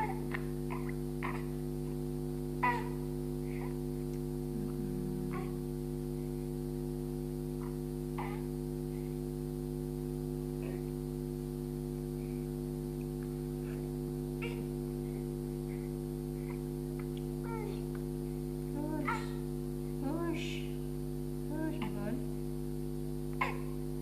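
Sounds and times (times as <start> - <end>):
baby whimpering and grunting: 0.0 - 1.6, 2.6 - 3.8, 4.6 - 5.6, 7.6 - 8.5, 10.6 - 10.9, 13.6 - 14.7, 17.4 - 17.9, 18.9 - 19.4, 23.4 - 23.8
steady electrical hum: 0.0 - 24.0.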